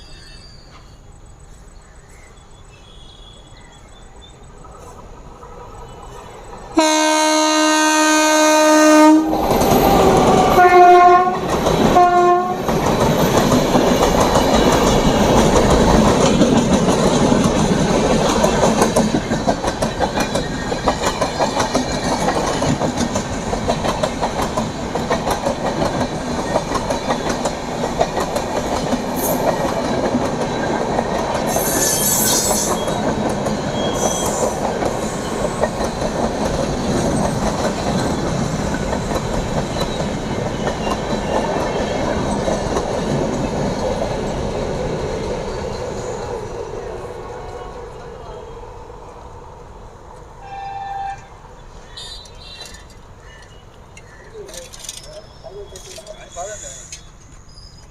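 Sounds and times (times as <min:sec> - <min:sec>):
train rumble: 0:03.4 - 0:57.9
locomotive horn blasts: 0:06.8 - 0:09.4, 0:10.5 - 0:12.7, 0:50.4 - 0:51.4
train wheels clattering over joints: 0:11.4 - 0:46.5, 0:52.2 - 0:57.9.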